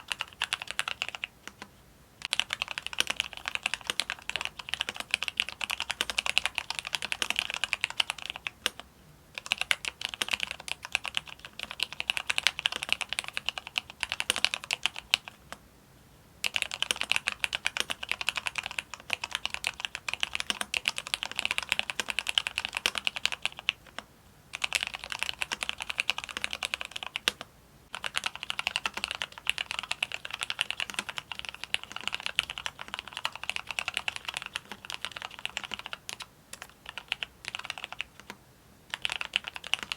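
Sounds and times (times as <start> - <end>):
mechanical keyboard typing: 0.0 - 15.6, 16.4 - 39.9.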